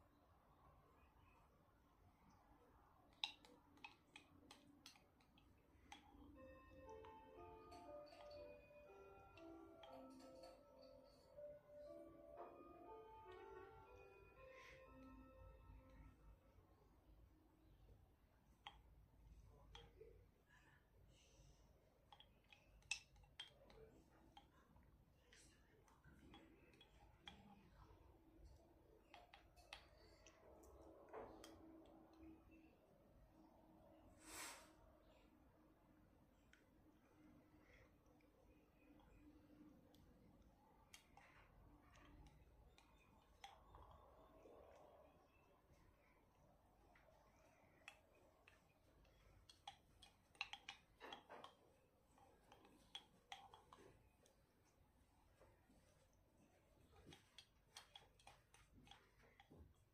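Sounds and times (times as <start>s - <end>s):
faint steady hum: 0.0s - 59.9s
cutlery tapping a dish: 3.1s - 6.3s, 47.8s - 51.8s, 57.0s - 59.6s.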